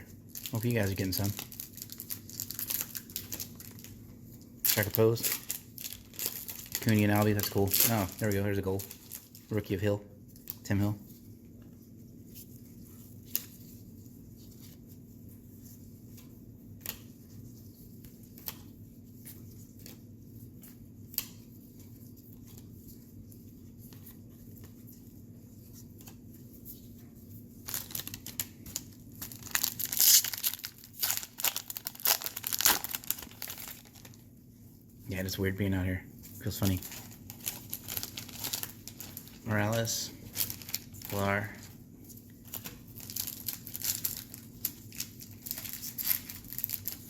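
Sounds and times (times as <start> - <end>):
wrapper crinkling and tearing: 0.2 - 4.0, 4.6 - 9.8, 27.6 - 34.2, 36.4 - 41.7, 42.4 - 47.0.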